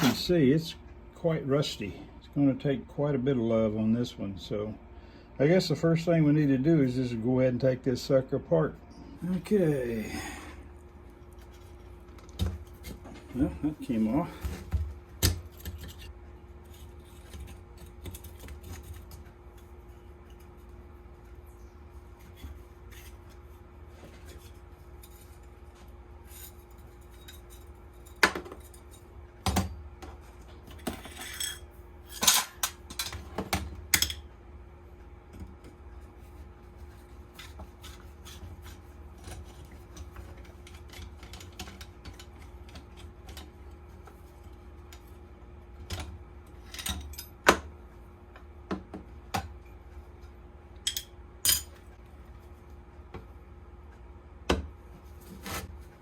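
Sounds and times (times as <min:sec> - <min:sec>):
metal parts clinking and clunking: 0:30.7 - 0:33.3.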